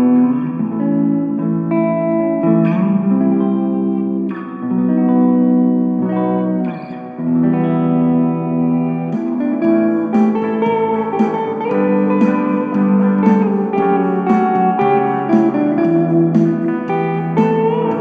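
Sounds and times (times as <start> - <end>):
electric guitar with reverb: 0.0 - 18.0.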